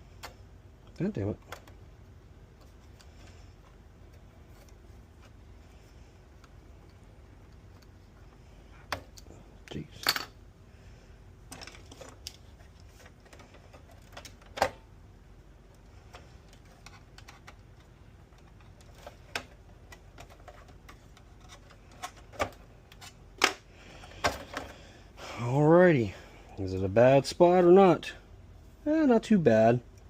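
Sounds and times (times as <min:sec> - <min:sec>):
plastic and metal parts clicking: 0:11.5 - 0:14.8, 0:16.1 - 0:23.6.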